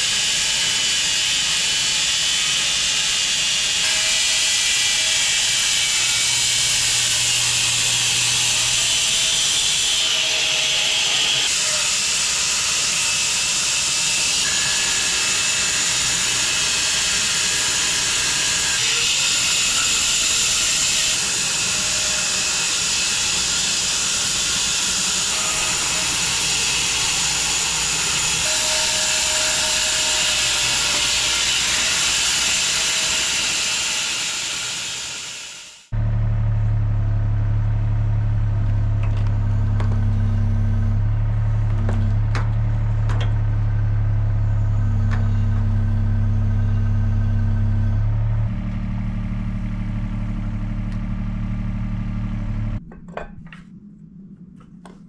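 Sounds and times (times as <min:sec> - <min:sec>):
sawmill cutting log: 0:00.0 - 0:35.7
faint engine tone: 0:36.0 - 0:52.8.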